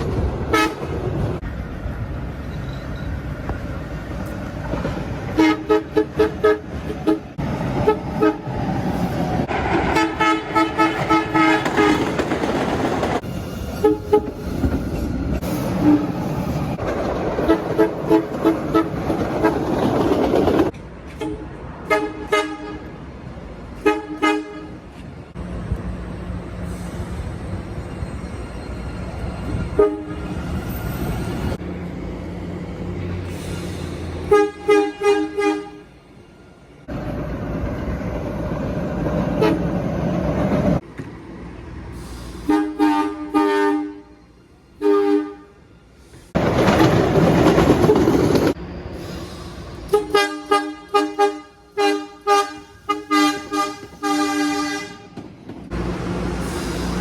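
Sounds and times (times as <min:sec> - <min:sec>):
rushing train noise: 0:00.0 - 0:57.0
two-tone train horn toots: 0:00.5 - 0:00.9, 0:05.3 - 0:08.5, 0:09.9 - 0:12.2, 0:13.8 - 0:14.4, 0:15.8 - 0:16.2, 0:17.4 - 0:19.6, 0:21.1 - 0:23.0, 0:23.8 - 0:24.9, 0:29.7 - 0:30.4, 0:34.2 - 0:35.9, 0:39.4 - 0:39.7, 0:42.4 - 0:44.2, 0:44.8 - 0:45.7, 0:49.9 - 0:55.2.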